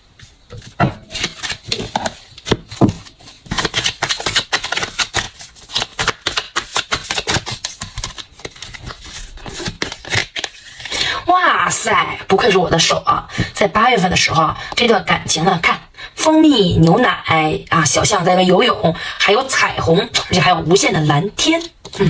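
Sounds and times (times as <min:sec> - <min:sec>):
cards being shuffled: 0:00.2 - 0:11.1.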